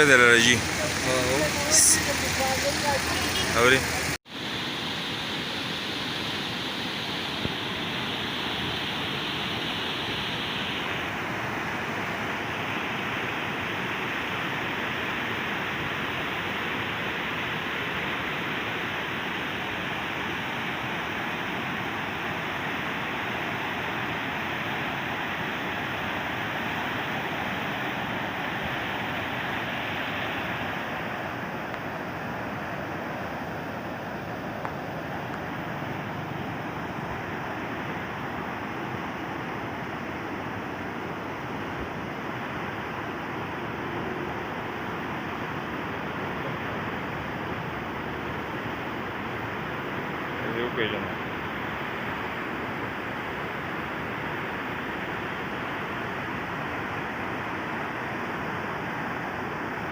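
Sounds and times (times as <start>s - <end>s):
floodwater rushing: 0.0s - 59.9s.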